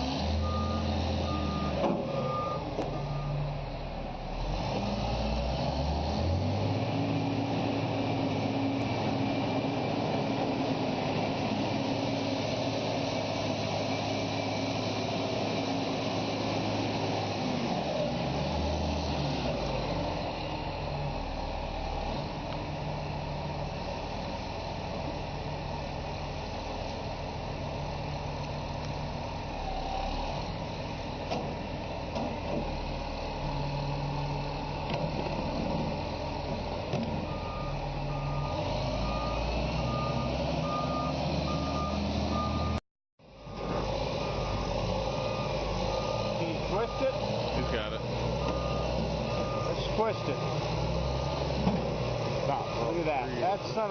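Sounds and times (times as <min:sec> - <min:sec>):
heavy diesel machinery running: 0:00.0 - 0:53.9
reversing alarm beeping: 0:00.4 - 0:03.4, 0:37.3 - 0:42.8, 0:44.2 - 0:51.5, 0:52.5 - 0:53.2.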